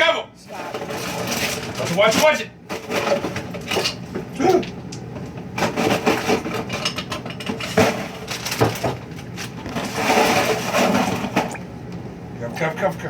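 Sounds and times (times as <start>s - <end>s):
objects clattering together: 0.6s - 4.0s, 5.6s - 11.6s.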